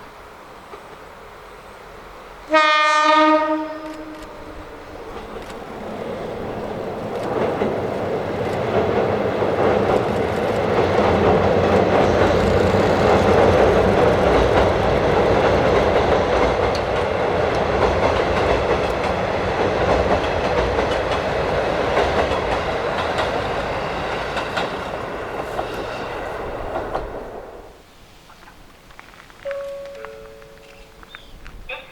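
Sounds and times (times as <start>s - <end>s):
diesel train rumble: 3.6s - 27.8s
wheels clattering over rail joints: 5.1s - 27.4s.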